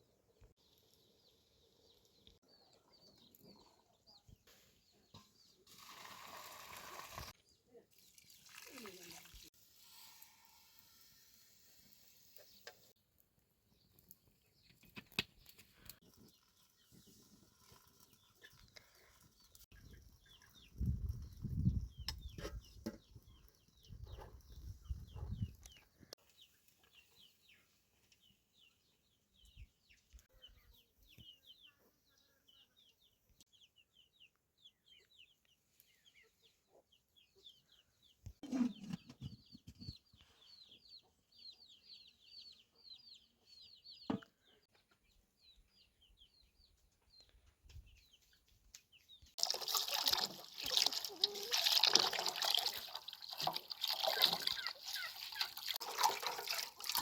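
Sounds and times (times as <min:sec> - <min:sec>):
chicks peeping: 0:54.6 - 0:55.5.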